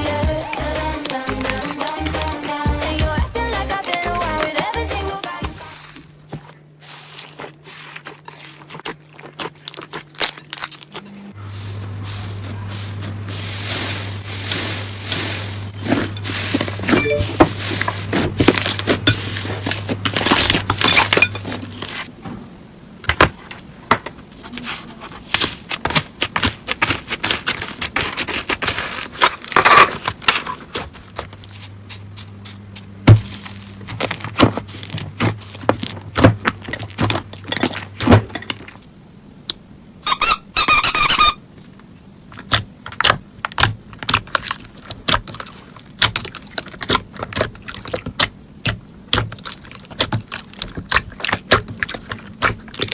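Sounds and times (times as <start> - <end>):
slime crackling and popping: 42.3 - 52.9.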